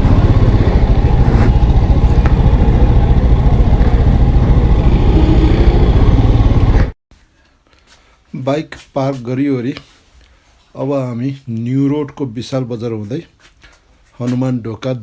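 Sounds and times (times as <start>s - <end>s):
motorcycle engine running: 0.0s - 7.0s.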